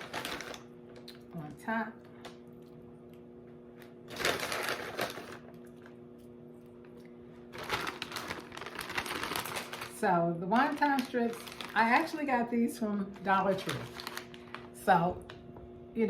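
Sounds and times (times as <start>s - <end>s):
crispy strips rustling and rattling: 0.0s - 0.6s, 4.1s - 5.5s, 7.5s - 12.2s, 13.2s - 14.8s.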